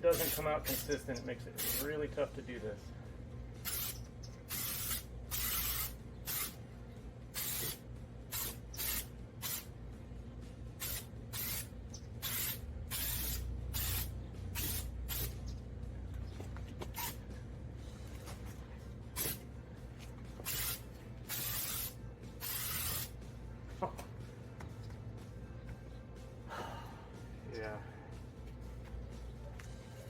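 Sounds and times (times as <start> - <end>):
aerosol spray can hissing: 0.1 - 0.9, 1.6 - 1.9, 3.6 - 6.6, 7.4 - 9.7, 10.8 - 15.4, 17.0 - 17.2, 19.2 - 19.4, 20.4 - 23.1.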